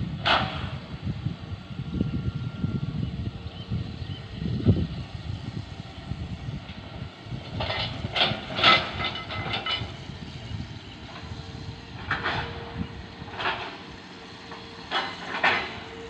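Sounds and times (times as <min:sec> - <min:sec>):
excavator diesel engine rumbling: 0:00.0 - 0:16.0
metallic clanks and squeals: 0:07.6 - 0:13.8, 0:14.4 - 0:16.0.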